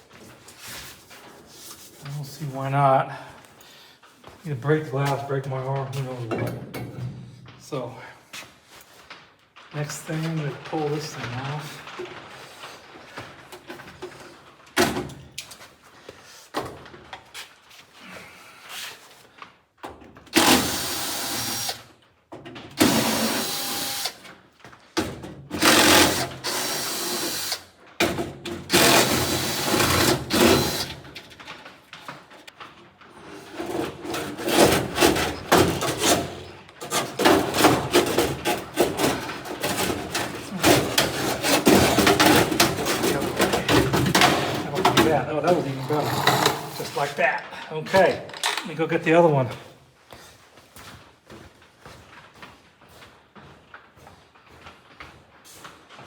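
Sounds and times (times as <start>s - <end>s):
power tool rattling: 20.3s - 21.8s, 22.7s - 24.2s, 25.4s - 31.7s, 33.4s - 47.2s.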